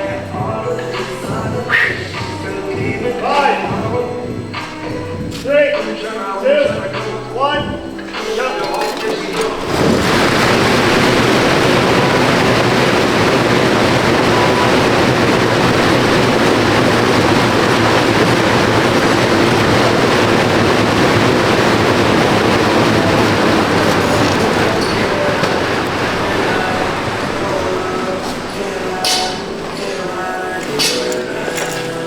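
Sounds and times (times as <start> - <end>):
fan flywheel whirring: 0.0 - 32.0.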